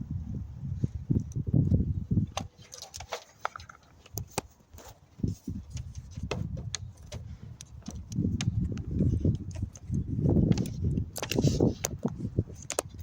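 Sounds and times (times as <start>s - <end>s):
clicks and taps of handling wiring: 2.3s - 13.0s.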